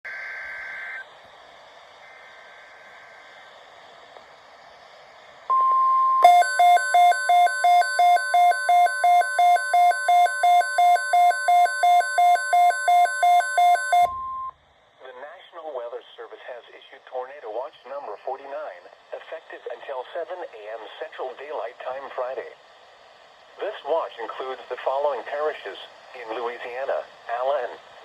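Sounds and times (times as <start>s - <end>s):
faint radio hiss: 0.1s - 5.7s, 14.8s - 28.0s
steady alert tone: 6.2s - 14.2s
rapidly pulsing electronic beep: 6.2s - 14.5s.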